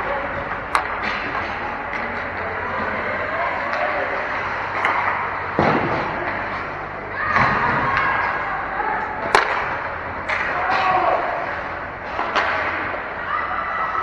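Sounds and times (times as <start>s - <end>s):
hockey sticks and puck knocking: 0.0s - 13.3s
skates and players in a hall: 0.0s - 14.0s
sharp crack: 9.2s - 11.2s.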